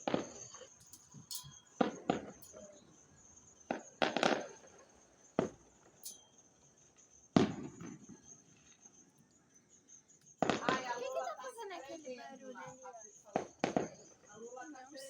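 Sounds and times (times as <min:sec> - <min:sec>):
fireworks crackles: 0:00.0 - 0:02.6, 0:03.7 - 0:04.7, 0:07.4 - 0:08.1, 0:10.4 - 0:12.1, 0:13.3 - 0:14.3
fireworks bangs: 0:03.7 - 0:04.7, 0:07.4 - 0:08.2, 0:10.4 - 0:11.6, 0:13.3 - 0:14.2.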